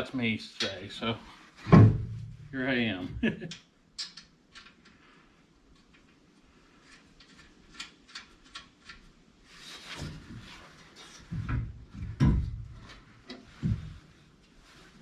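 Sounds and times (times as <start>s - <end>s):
heavy metal clunks: 1.6s - 2.5s.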